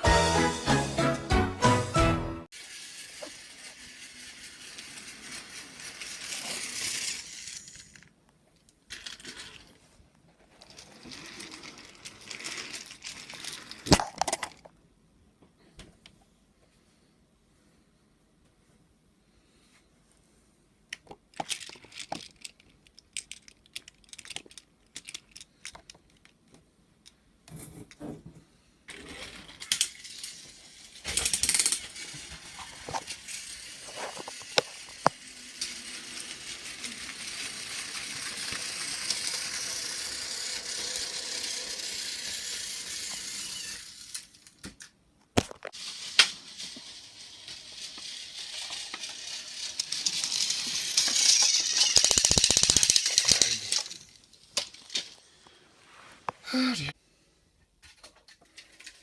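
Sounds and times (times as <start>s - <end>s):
toy train motor whirring: 2.5s - 8.1s, 10.7s - 14.0s, 28.9s - 44.9s, 45.6s - 55.2s
toy train wheels rattling: 2.5s - 8.1s, 10.6s - 14.6s, 21.4s - 25.9s, 28.9s - 44.6s, 45.6s - 55.2s.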